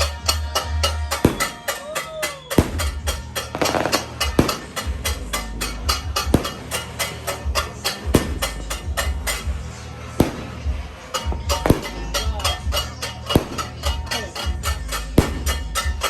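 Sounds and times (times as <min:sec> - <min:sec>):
firecrackers bangs and crackles: 0:00.0 - 0:16.0
loud firework booms: 0:10.2 - 0:10.8.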